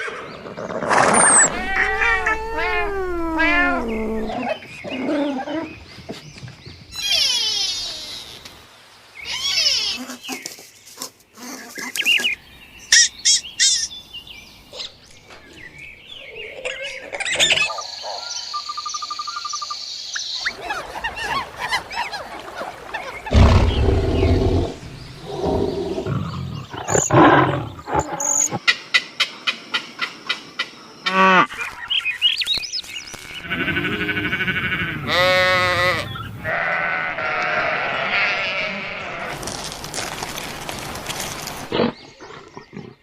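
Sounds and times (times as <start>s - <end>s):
chirping and trilling calls: 0.9s - 5.8s
high pulsing animal call: 1.1s - 5.6s
deep low animal call: 1.1s - 5.7s, 23.3s - 28.6s.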